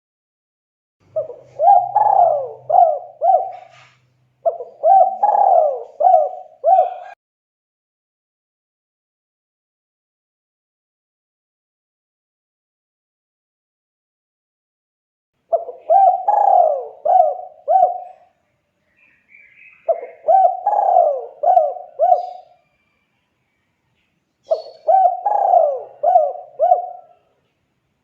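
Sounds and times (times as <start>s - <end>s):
dove cooing: 1.1s - 7.2s, 15.5s - 18.4s, 19.8s - 22.8s, 24.4s - 27.4s.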